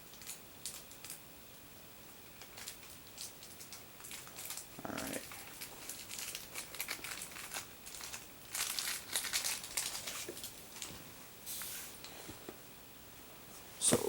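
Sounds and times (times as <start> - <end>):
plastic packaging crinkling: 0.0 - 1.2, 2.3 - 11.0.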